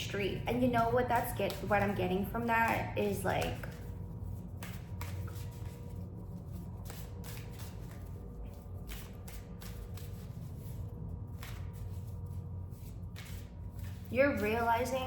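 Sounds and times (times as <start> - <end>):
faint steady whine: 0.0 - 15.0
street-cleaning equipment rumbling: 13.8 - 15.0.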